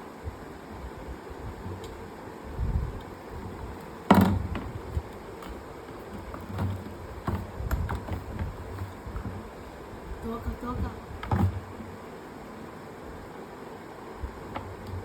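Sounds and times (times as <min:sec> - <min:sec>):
low thumps: 0:01.6 - 0:12.6.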